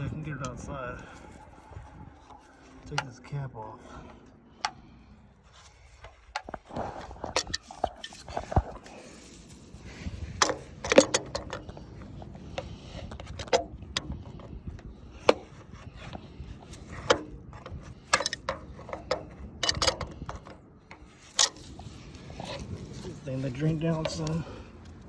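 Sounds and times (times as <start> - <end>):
tools knocking and clicking: 6.0 - 8.9, 10.3 - 14.5, 15.2 - 22.7.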